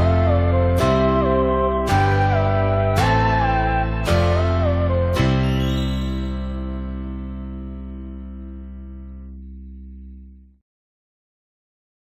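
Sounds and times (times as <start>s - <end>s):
sliding melody line: 0.0s - 7.2s
guitar chords: 0.0s - 10.4s
low bass: 0.0s - 10.6s.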